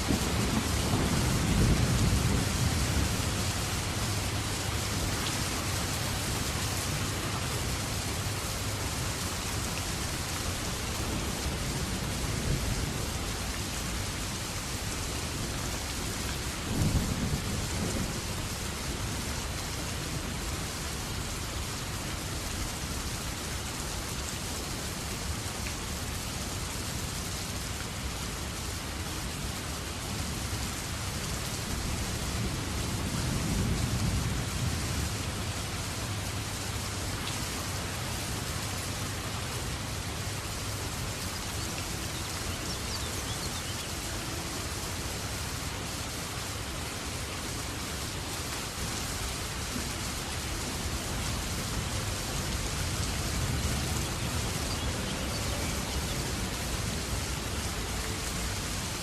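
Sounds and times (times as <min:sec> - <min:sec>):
thunder rumbling: 0:00.0 - 0:05.2
steady rain falling: 0:00.0 - 0:59.0.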